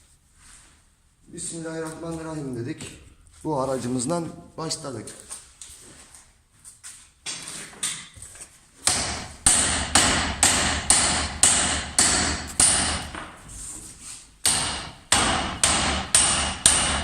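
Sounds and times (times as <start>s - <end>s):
hammer striking steel: 8.9s - 13.3s, 14.4s - 17.0s.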